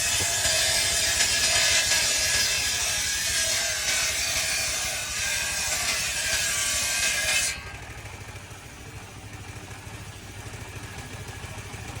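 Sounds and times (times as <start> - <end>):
saw cutting through wood: 0.0 - 8.2
engine running with low pulse: 0.0 - 12.0.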